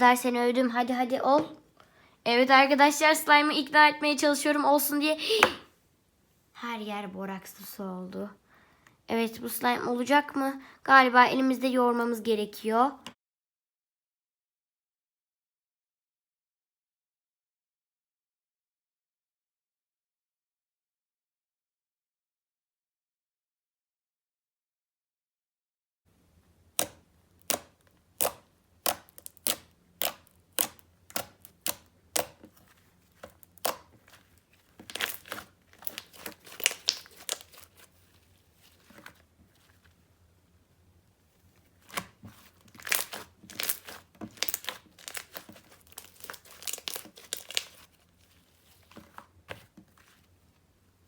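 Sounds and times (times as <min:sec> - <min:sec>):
sticky slime pops: 0:26.8 - 0:32.5, 0:33.2 - 0:34.1, 0:34.8 - 0:37.7, 0:41.8 - 0:47.8
slime crackling squelches: 0:26.8 - 0:40.0, 0:41.3 - 0:50.3.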